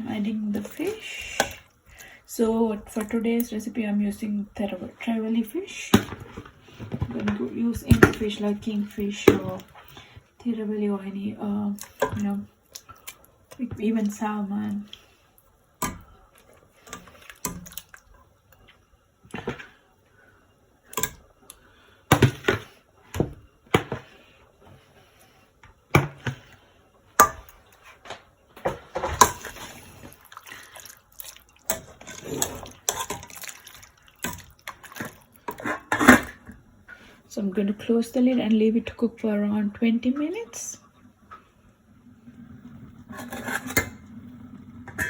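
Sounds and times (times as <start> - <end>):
fish splashing into liquid: 32.6 - 35.4.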